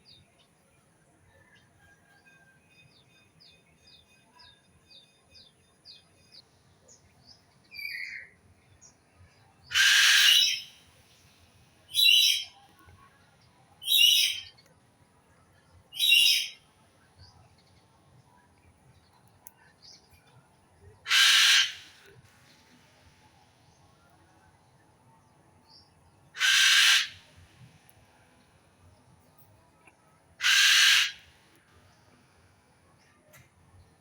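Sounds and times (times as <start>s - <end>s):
bird giving harsh rasping calls: 9.7s - 10.8s, 12.0s - 12.5s, 13.8s - 14.4s, 16.0s - 16.6s, 21.1s - 21.9s, 26.4s - 27.2s, 30.4s - 31.2s
faint high bird chirps: 11.9s - 13.1s, 13.8s - 14.7s, 15.9s - 16.6s.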